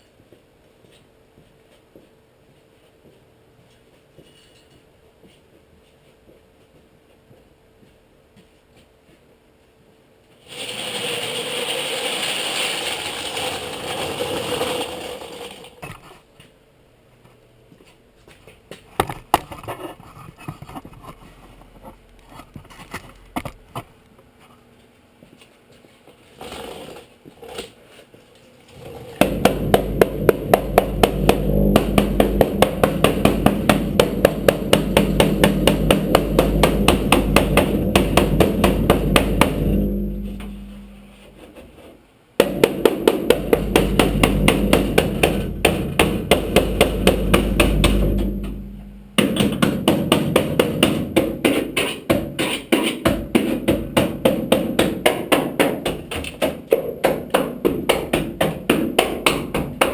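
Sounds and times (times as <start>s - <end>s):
steady low hum: 27.1s - 59.9s
rasping noise: 28.7s - 41.8s
rapid hammer blows on metal: 28.8s - 41.2s, 42.4s - 59.9s
knocks and clicks: 29.2s - 40.8s, 42.4s - 59.9s.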